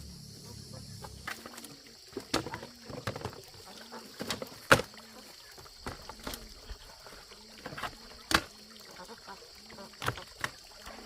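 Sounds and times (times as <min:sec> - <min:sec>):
high insect drone: 0:00.0 - 0:11.0.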